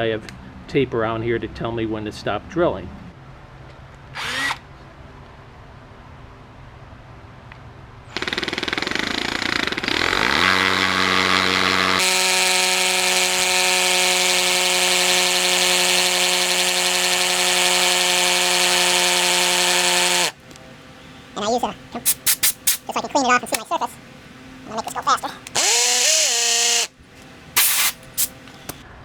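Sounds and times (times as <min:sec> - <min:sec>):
power drill boring into concrete: 0:04.2 - 0:04.6, 0:08.1 - 0:20.4, 0:24.7 - 0:26.9, 0:27.6 - 0:28.8.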